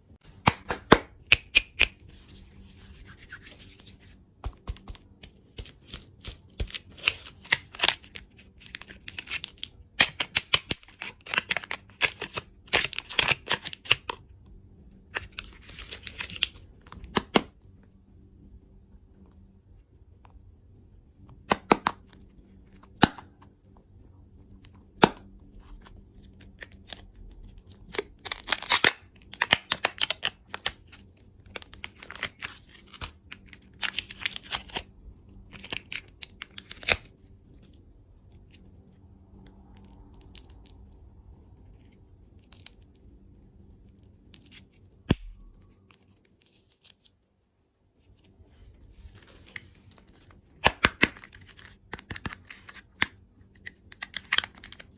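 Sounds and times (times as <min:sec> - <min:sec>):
packaging crinkling and tearing: 0:04.6 - 0:14.2, 0:15.2 - 0:17.2, 0:25.7 - 0:37.2, 0:49.2 - 0:54.9.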